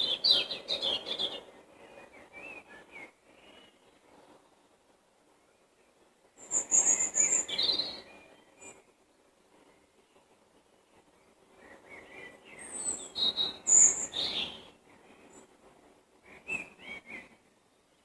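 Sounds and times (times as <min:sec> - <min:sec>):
songbird singing: 0:00.0 - 0:15.6, 0:16.2 - 0:18.0.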